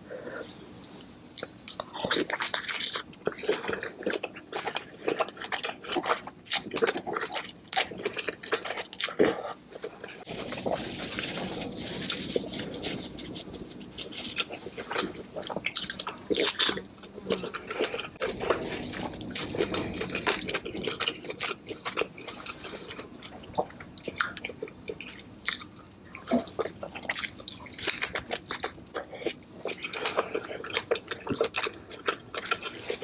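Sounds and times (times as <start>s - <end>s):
wet chewing and smacking: 0.8s - 11.2s, 12.1s - 33.0s.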